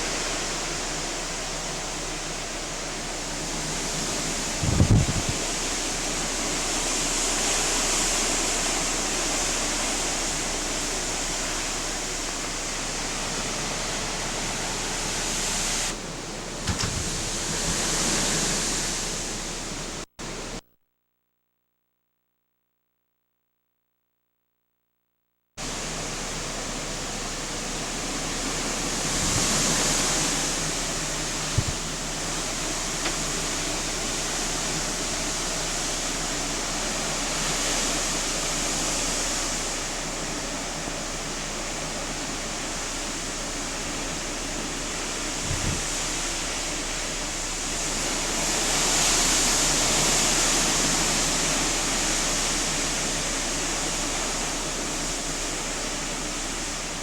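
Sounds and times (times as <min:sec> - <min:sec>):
strong wind rushing in gusts: 0:03.5 - 0:05.7, 0:27.8 - 0:33.2, 0:45.3 - 0:46.1.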